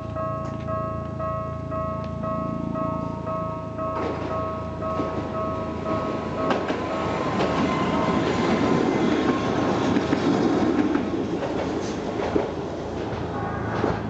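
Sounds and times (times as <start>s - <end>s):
crossing alarm bell ringing: 0.0s - 9.6s
train wheels clacking over rails: 4.0s - 14.0s.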